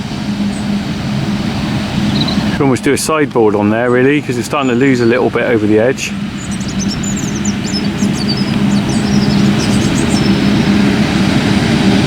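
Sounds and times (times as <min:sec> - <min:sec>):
harvester engine drone: 0:00.0 - 0:12.0
faint high chirps: 0:02.1 - 0:02.5, 0:06.3 - 0:10.5.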